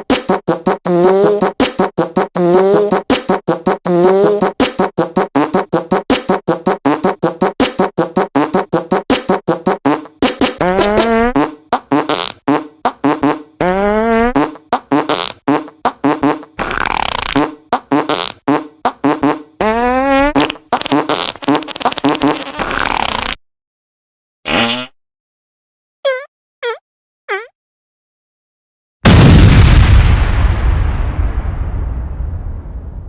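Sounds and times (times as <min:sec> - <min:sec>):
fart sounds: 0:00.0 - 0:23.4, 0:24.5 - 0:25.0, 0:26.1 - 0:27.5
squeaks falling in pitch: 0:10.6 - 0:11.3, 0:26.0 - 0:27.6.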